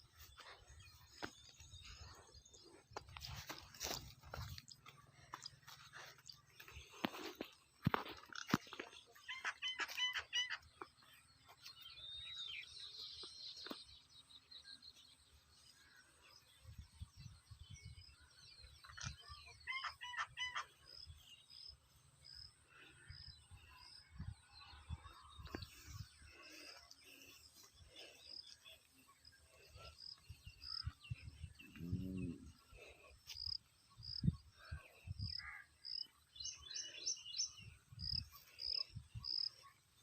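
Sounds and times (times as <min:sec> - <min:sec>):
birds calling: 0:00.0 - 0:16.7, 0:17.8 - 0:40.0.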